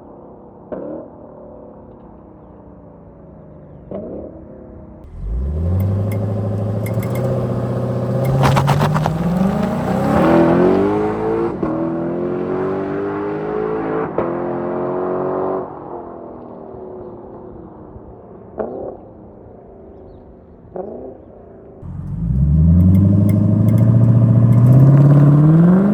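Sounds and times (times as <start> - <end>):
car engine accelerating hard: 5.0 - 15.6, 21.8 - 25.9.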